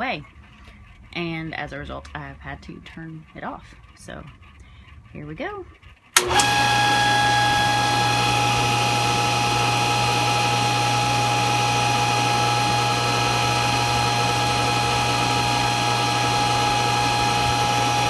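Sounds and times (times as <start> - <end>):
pool pump motor humming: 0.0 - 18.0.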